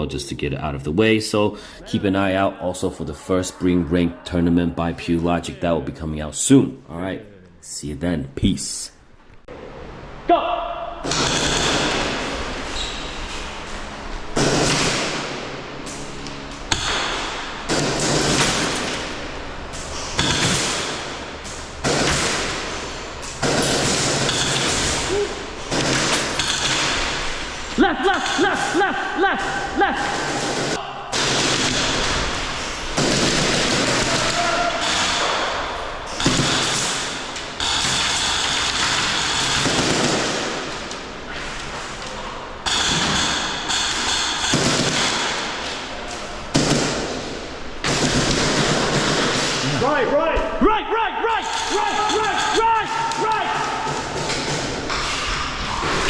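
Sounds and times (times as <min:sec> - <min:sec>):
airsoft guns firing bursts: 0:11.0 - 0:12.6, 0:14.4 - 0:40.9, 0:42.6 - 0:45.6, 0:46.5 - 0:49.7, 0:51.4 - 0:55.0.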